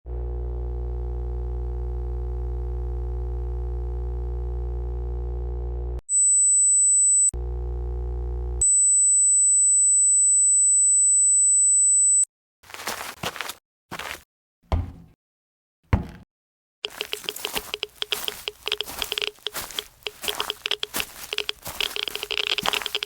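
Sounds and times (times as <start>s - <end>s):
high-pitched sine tone: 0.1s - 12.2s
low electronic buzzing hum: 0.1s - 12.2s.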